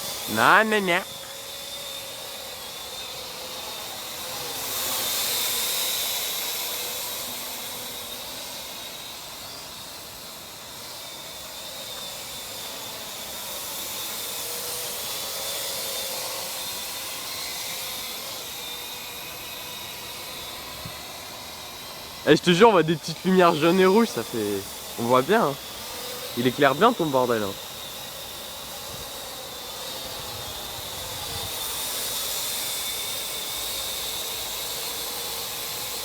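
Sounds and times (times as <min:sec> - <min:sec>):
quadcopter rotors whirring: 0:00.0 - 0:36.0.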